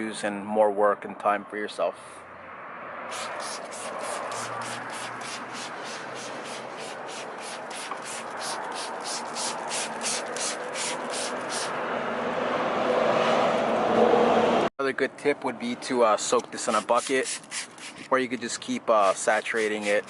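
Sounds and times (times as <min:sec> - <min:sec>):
steady rubbing hiss: 0:03.1 - 0:11.7
hand rubbing car panel: 0:03.2 - 0:11.7.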